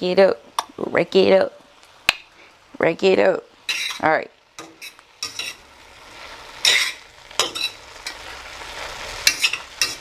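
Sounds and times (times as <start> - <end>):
vegetables sizzling in a pot: 0.0 - 10.0
utensil scraping a pot: 3.7 - 5.7, 6.6 - 8.3, 9.2 - 10.0.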